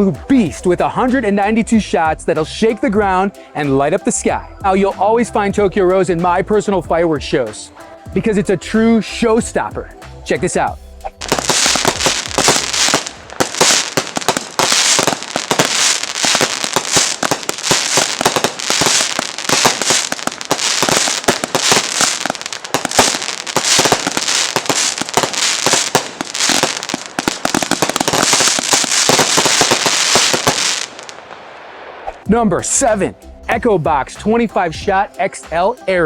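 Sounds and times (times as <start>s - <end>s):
fireworks barrage: 11.1s - 32.3s.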